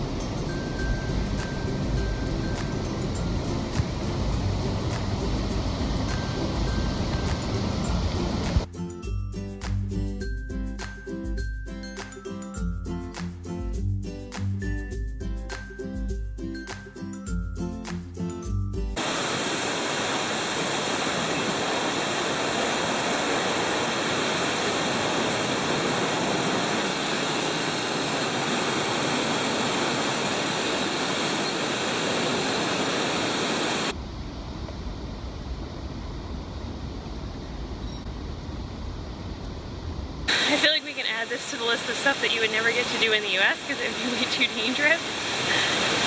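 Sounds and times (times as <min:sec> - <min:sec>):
waterfall roaring: 0:00.0 - 0:08.7, 0:19.0 - 0:34.0, 0:40.3 - 0:46.0
background music: 0:00.0 - 0:19.0.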